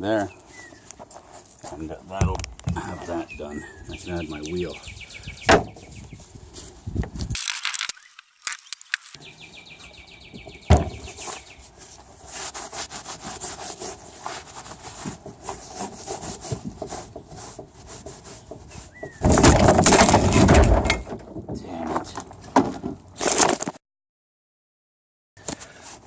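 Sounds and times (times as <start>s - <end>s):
rubbing and scraping strokes: 10.7s - 20.1s.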